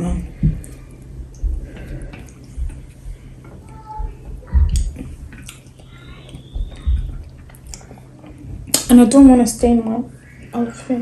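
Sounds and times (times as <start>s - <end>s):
low thumps: 0.0s - 5.4s, 6.4s - 7.6s
chewing and mouth sounds: 4.6s - 8.9s.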